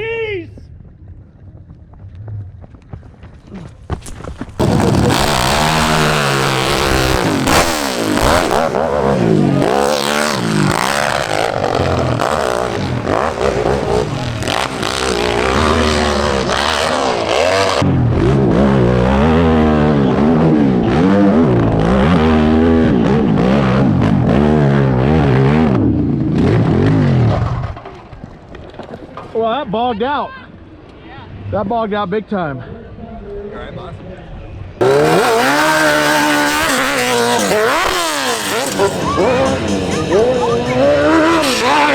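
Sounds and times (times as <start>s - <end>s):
motorcycle engine revving: 4.6s - 27.9s, 34.8s - 41.9s.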